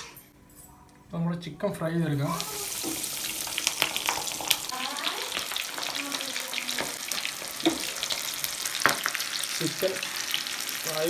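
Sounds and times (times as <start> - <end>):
chicken frying in hot oil: 2.2 - 11.0
oil crackling pops: 2.3 - 10.8.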